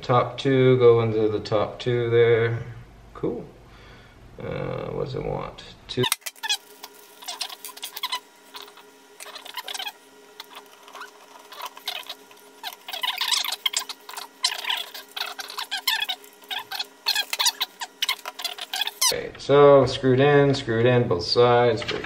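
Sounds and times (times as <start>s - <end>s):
faint steady hum: 0.0s - 22.0s
screws squeaking and clicking: 6.0s - 19.1s.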